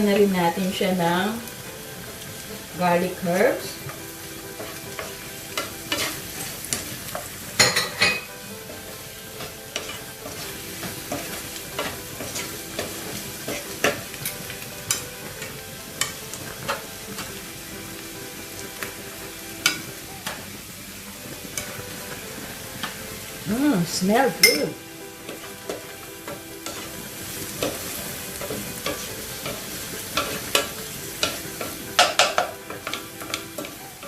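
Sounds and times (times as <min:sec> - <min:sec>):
food sizzling in a frying pan: 0:00.0 - 0:34.0
utensil scraping a pan: 0:02.8 - 0:17.4, 0:24.2 - 0:34.0.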